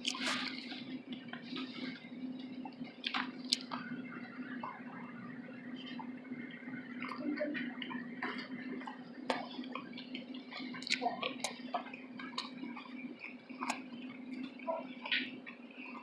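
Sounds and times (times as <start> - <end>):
wet chewing smacks and squishes: 0.0 - 1.6, 2.4 - 3.9, 7.8 - 16.0
steady low hum: 0.0 - 16.0.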